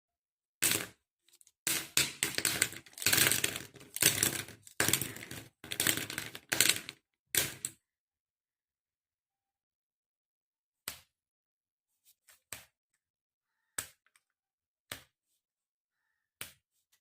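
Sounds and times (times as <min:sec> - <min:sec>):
pens tapping on hard surface: 0:00.6 - 0:00.9, 0:01.7 - 0:07.7.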